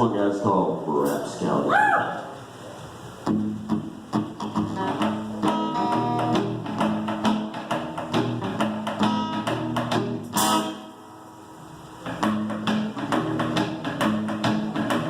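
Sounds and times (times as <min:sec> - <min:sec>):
cajon and cymbal percussion: 0:03.3 - 0:11.2, 0:12.0 - 0:15.0
strummed acoustic guitar: 0:03.3 - 0:11.2, 0:12.0 - 0:15.0
cymbal crash: 0:10.4 - 0:11.3.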